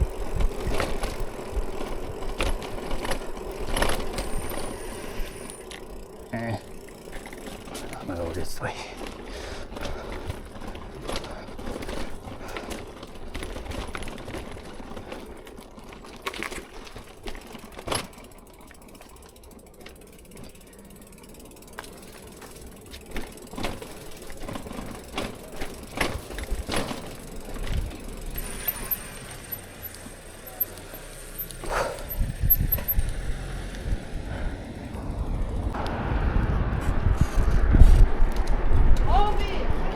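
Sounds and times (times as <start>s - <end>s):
freewheel ticking: 0.0s - 35.8s
bicycle clicks and rattles: 0.0s - 35.9s, 36.8s - 39.9s
low rumble: 31.8s - 39.9s.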